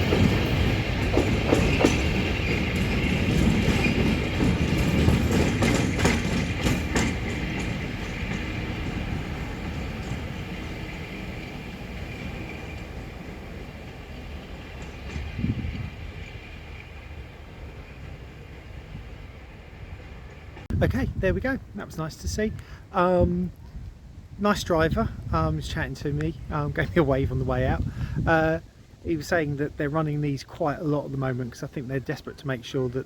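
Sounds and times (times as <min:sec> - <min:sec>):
wheel clicks over rail joints: 0:00.0 - 0:11.5
diesel locomotive engine rumble: 0:00.0 - 0:33.0.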